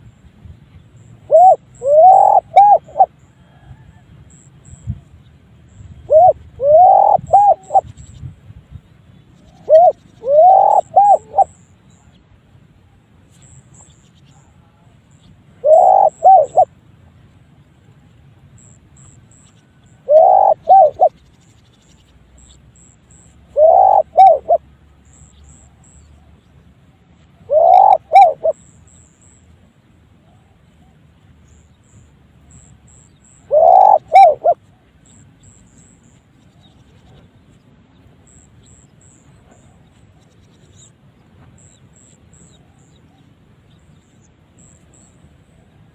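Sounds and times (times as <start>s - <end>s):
dove cooing: 1.2s - 4.0s, 6.1s - 7.9s, 9.5s - 11.6s, 15.6s - 16.7s, 20.0s - 21.1s, 23.5s - 24.6s, 27.4s - 28.6s, 33.4s - 34.7s.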